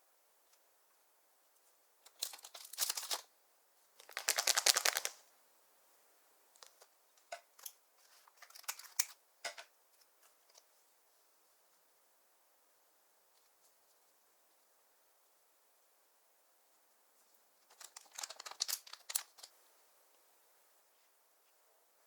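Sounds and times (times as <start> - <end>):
scattered clicks and pops: 4.0 - 5.2.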